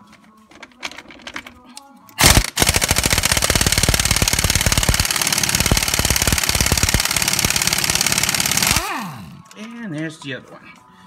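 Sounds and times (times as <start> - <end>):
impact wrench rattling: 2.2 - 9.6.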